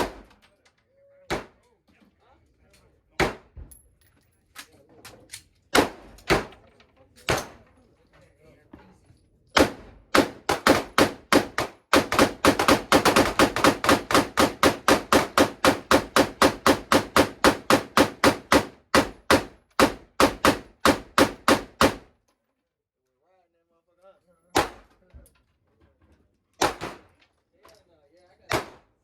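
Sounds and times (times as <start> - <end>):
semi-automatic gunshots: 0.0 - 0.4, 1.3 - 1.6, 3.2 - 3.6, 5.7 - 6.6, 9.6 - 22.1, 24.5 - 24.9, 26.6 - 27.1, 28.5 - 29.0.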